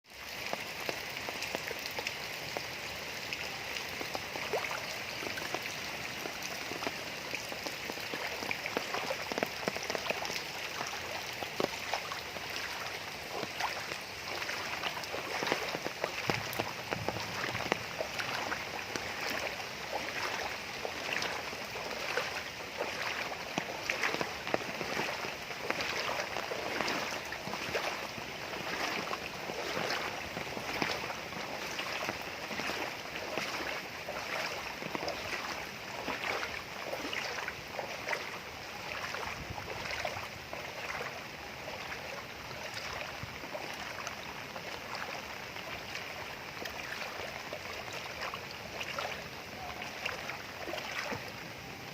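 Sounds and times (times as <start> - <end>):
water splashing from wading: 0.1 - 51.9.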